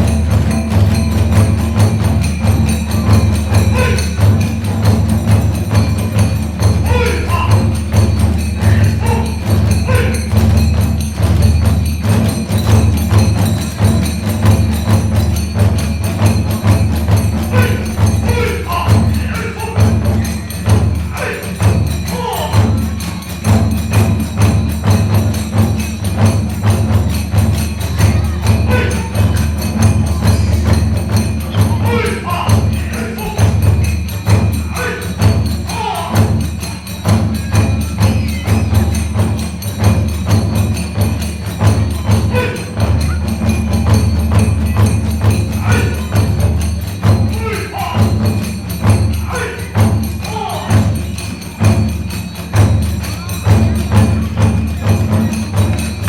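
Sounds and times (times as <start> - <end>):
hand cymbals clashing: 0.0 - 56.0
taiko drums beating: 0.0 - 56.0
bamboo flutes: 2.9 - 4.3, 27.8 - 39.3, 41.7 - 44.0.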